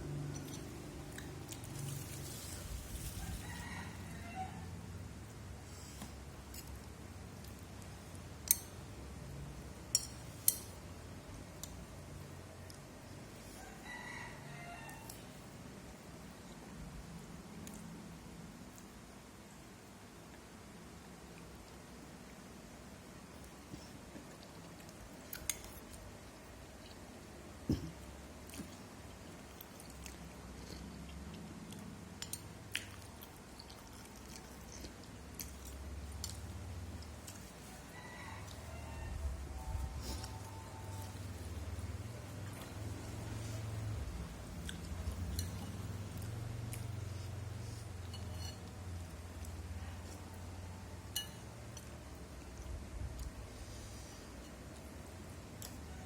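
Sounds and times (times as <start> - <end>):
low steady hum: 0.0 - 56.0
person chewing food: 0.1 - 3.3, 23.4 - 38.8, 39.8 - 50.5.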